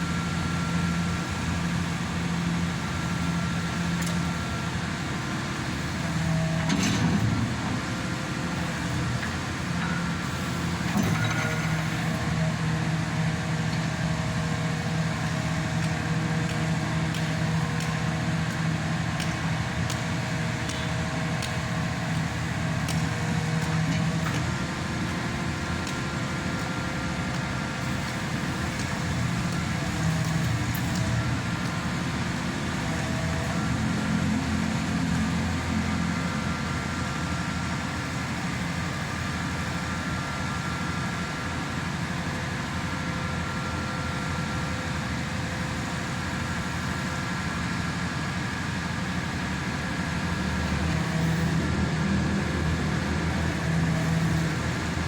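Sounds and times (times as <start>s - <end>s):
engine and hydraulic pump humming: 0.0s - 55.0s.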